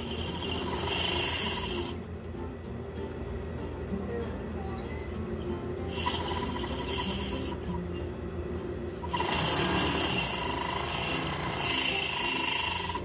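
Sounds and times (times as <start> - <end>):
sewing machine whirring: 0.0 - 2.0, 5.9 - 7.8, 9.0 - 13.0.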